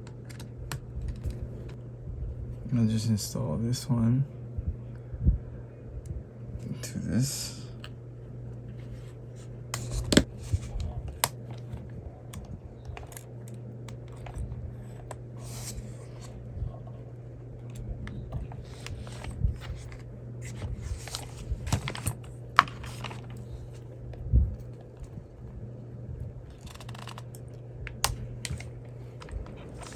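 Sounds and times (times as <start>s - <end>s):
steady low hum: 0.0s - 29.9s.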